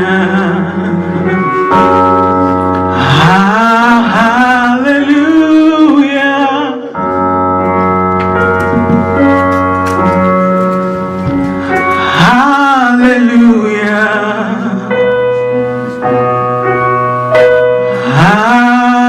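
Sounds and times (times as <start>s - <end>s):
sustained keyboard chords: 0.0s - 6.4s, 7.0s - 19.0s
person singing long notes: 0.0s - 7.1s, 17.7s - 19.0s.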